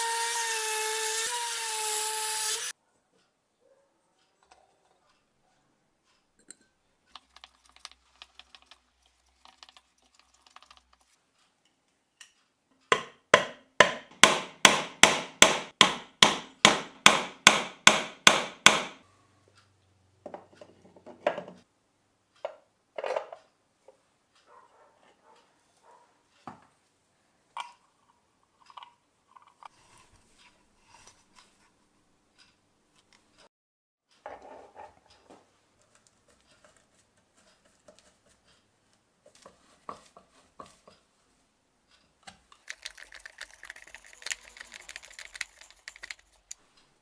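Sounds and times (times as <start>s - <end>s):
hammer tapping: 12.9s - 19.0s.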